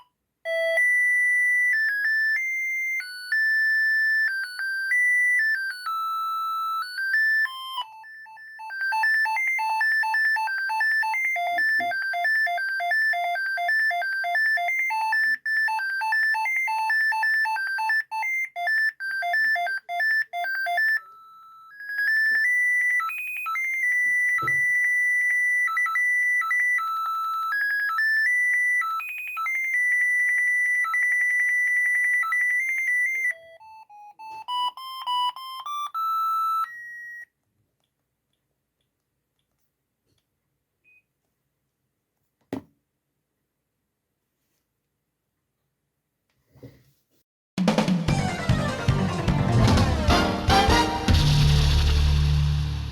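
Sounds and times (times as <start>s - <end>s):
mobile phone ringtone melodies: 0.0s - 37.3s, 48.1s - 51.3s.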